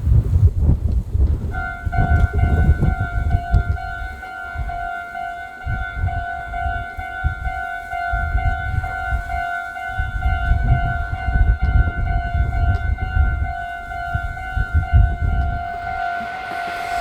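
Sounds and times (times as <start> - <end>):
railroad crossing alarm: 1.5 - 17.0
low rumble: 10.6 - 17.0.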